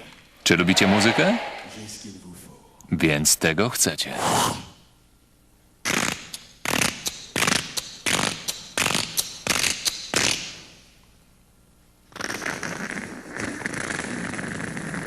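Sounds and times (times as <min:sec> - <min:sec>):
man making hissing mouth sounds: 0:04.2 - 0:04.8, 0:05.8 - 0:10.8, 0:12.1 - 0:15.0.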